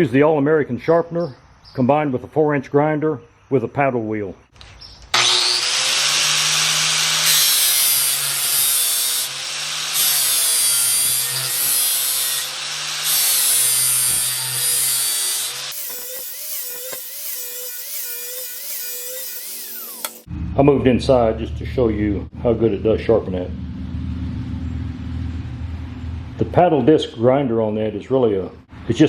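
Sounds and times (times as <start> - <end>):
angle grinder grinding steel: 5.2 - 20.3
grinder whine: 5.2 - 20.3.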